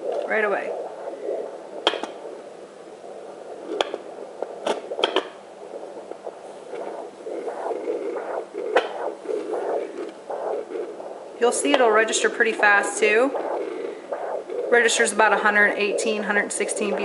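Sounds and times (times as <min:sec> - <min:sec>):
doppler pulsing blood flow: 0:00.0 - 0:17.0
sharp clicks: 0:01.8 - 0:02.2, 0:03.7 - 0:05.4.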